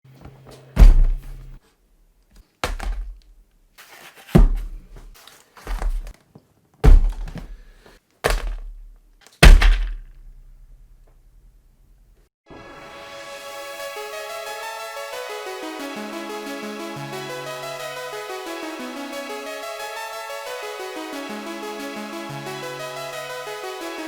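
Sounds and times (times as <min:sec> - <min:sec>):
heavy thumps: 0:00.8 - 0:01.6, 0:02.6 - 0:03.4, 0:04.3 - 0:06.1, 0:06.8 - 0:11.2.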